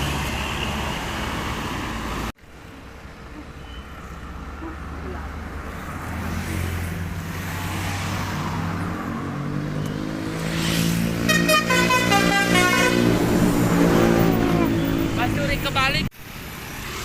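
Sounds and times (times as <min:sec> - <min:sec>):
musical horn tune: 0:11.2 - 0:13.1.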